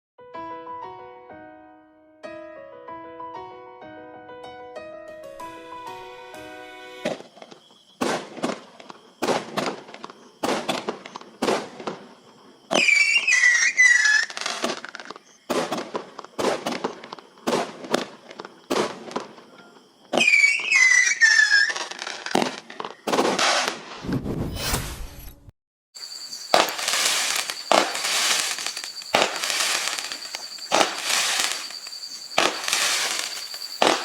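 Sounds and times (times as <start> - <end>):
firework whistles screaming: 12.7 - 14.8, 20.2 - 22.4, 26.0 - 34.0
fireworks banging: 26.0 - 34.0
fireworks crackling: 26.0 - 34.0.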